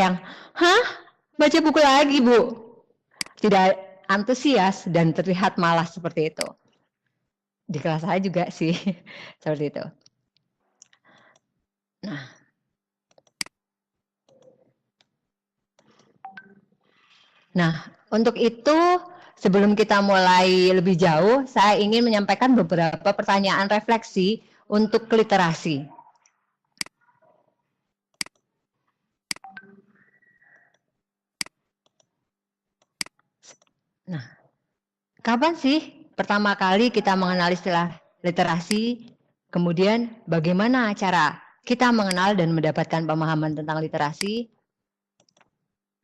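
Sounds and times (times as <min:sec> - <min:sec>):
computer clicks: 0:03.2 - 0:03.5, 0:13.1 - 0:13.6, 0:26.1 - 0:27.0, 0:28.1 - 0:28.5, 0:29.3 - 0:29.8, 0:32.8 - 0:33.8, 0:42.0 - 0:42.4
sharp clicks: 0:13.1 - 0:13.6, 0:28.2 - 0:28.4, 0:29.3 - 0:29.7.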